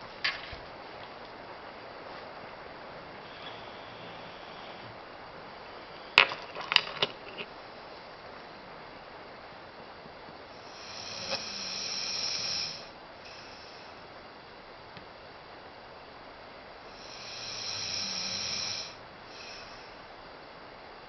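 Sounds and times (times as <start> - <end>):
dog snoring: 3.2 - 4.9, 10.6 - 13.9, 16.9 - 20.0.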